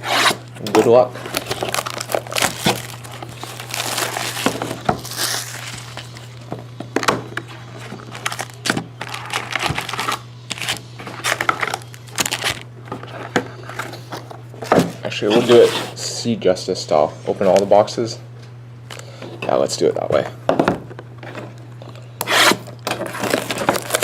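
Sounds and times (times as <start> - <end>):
low electrical hum: 0.0 - 24.0
plastic shrink-wrap crinkling: 1.2 - 6.5, 7.4 - 12.7, 23.0 - 24.0.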